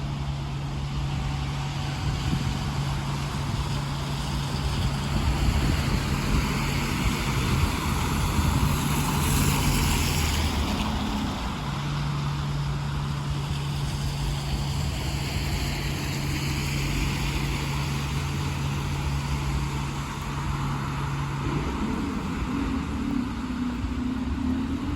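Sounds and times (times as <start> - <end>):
traffic engine hum: 0.0 - 24.9
tyres hissing on wet road: 0.0 - 24.9
vehicle passing: 1.1 - 24.9
higher wavering hum: 15.8 - 24.9.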